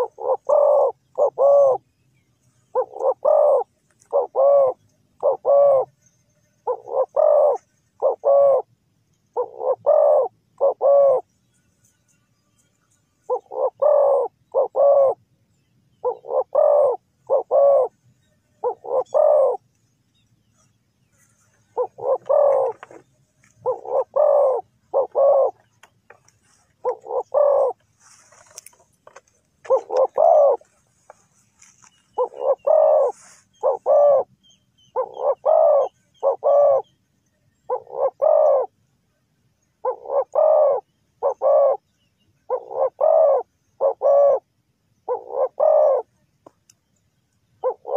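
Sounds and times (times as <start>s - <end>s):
dove cooing: 0.0s - 1.9s, 2.7s - 5.9s, 6.6s - 8.7s, 9.3s - 11.3s, 13.3s - 15.2s, 16.0s - 17.9s, 18.6s - 19.6s, 21.7s - 28.4s, 29.1s - 34.3s, 34.9s - 36.9s, 37.6s - 38.7s, 39.8s - 41.8s, 42.5s - 46.1s, 47.6s - 47.9s.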